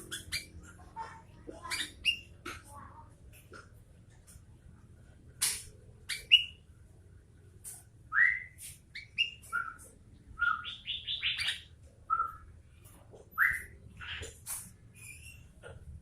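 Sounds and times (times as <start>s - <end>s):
bulbul singing: 6.1s - 6.7s, 8.1s - 12.5s.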